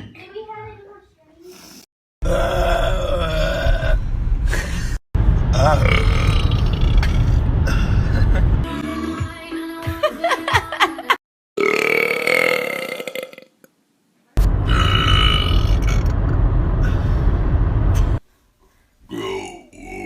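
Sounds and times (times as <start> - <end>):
man belching: 2.2 - 4.0, 5.6 - 7.9, 11.6 - 13.5, 19.1 - 20.0.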